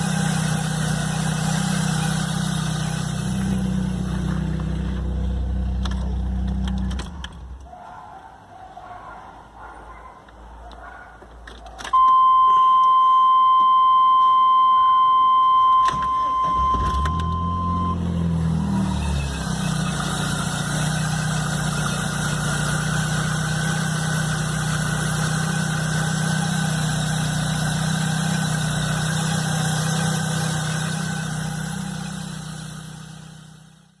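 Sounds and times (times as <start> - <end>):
car engine cranking and idling: 0.0 - 7.8, 10.3 - 34.0
steady high beep: 12.0 - 18.0.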